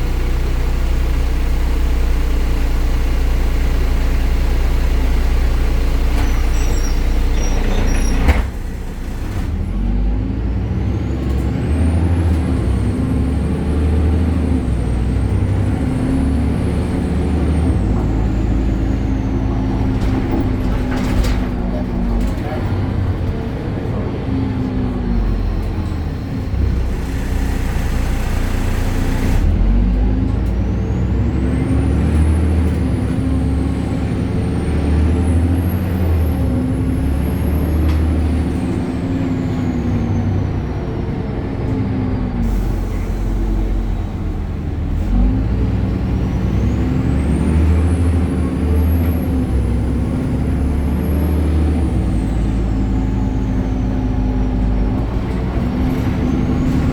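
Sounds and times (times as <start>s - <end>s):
bus engine accelerating: 0.0s - 56.9s.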